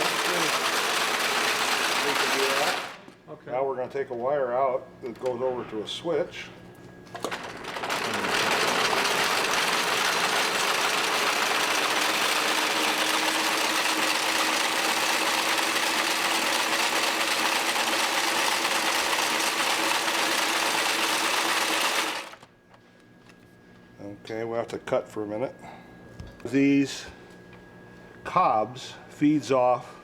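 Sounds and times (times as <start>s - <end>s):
braiding machine running: 0.0s - 3.2s, 7.0s - 22.5s.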